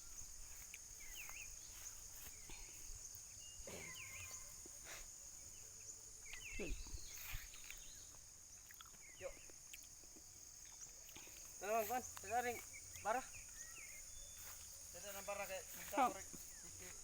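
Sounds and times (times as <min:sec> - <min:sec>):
high insect drone: 0:00.0 - 0:17.0.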